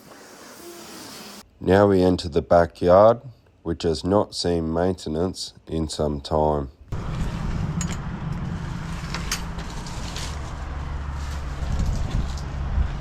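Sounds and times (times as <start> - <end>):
engine humming: 6.9 - 13.0.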